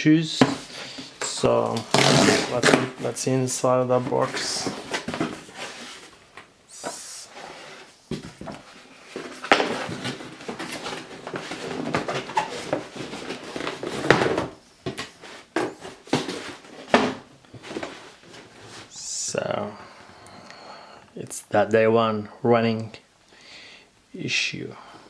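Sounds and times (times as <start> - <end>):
cardboard rustling and scraping: 0.2 - 19.0.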